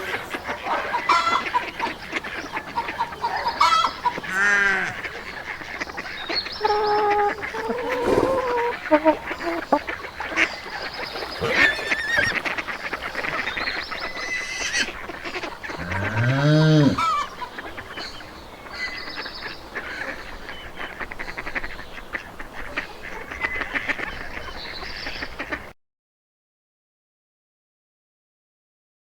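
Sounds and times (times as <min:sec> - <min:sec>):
ducks quacking: 0:00.0 - 0:25.7
geese honking: 0:00.0 - 0:25.7
low animal call: 0:06.6 - 0:09.8, 0:11.3 - 0:12.4, 0:15.7 - 0:17.3.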